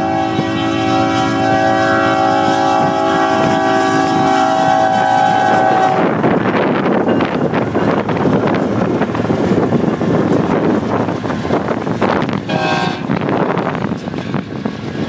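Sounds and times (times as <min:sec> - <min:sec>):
train horn chord: 0:00.0 - 0:06.2, 0:12.5 - 0:13.2.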